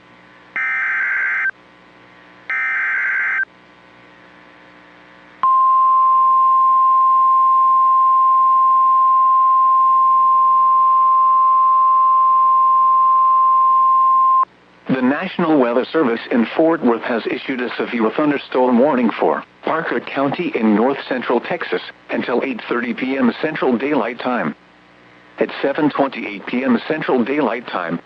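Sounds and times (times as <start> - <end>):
steady warning alarm tone: 0.6 - 1.5, 2.5 - 3.5.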